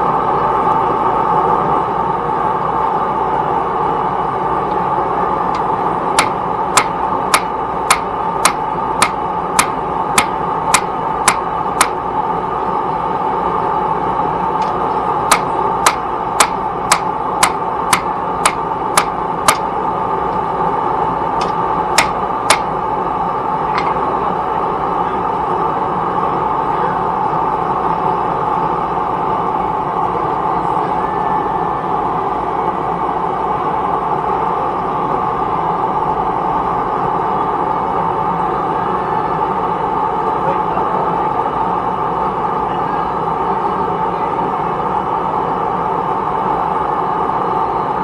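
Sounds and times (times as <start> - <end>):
hammer striking steel on anvil: 6.2 - 12.0, 15.3 - 19.7, 21.4 - 22.7.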